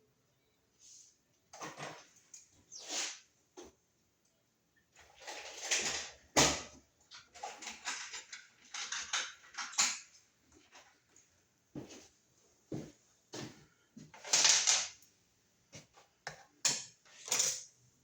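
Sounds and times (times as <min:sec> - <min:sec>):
wire and tools rustling and scraping: 0:00.8 - 0:03.7, 0:07.0 - 0:17.9.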